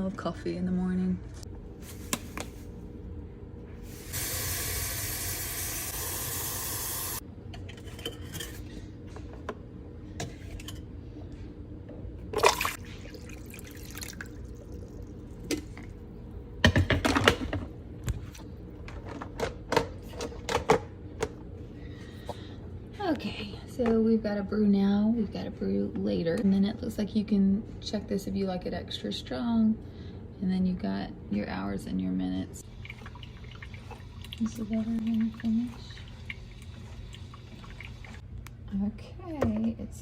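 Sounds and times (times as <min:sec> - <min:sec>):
water pouring: 0:12.4 - 0:15.4, 0:32.6 - 0:38.2.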